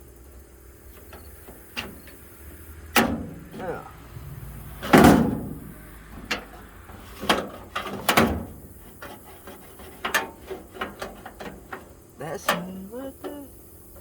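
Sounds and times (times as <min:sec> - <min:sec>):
sharp metal clunks: 0:02.9 - 0:03.7, 0:04.8 - 0:12.8
metal drawer scraping: 0:02.9 - 0:12.7.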